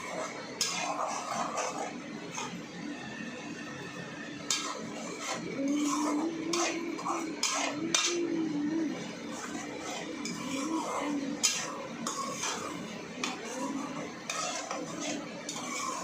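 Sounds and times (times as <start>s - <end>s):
metal utensil scraping a pot: 0.0s - 2.6s, 4.3s - 16.0s.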